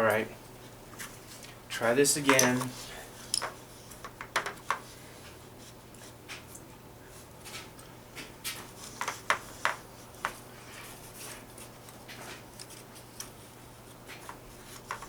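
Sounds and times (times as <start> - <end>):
handling clicks and knocks: 2.2 - 4.8.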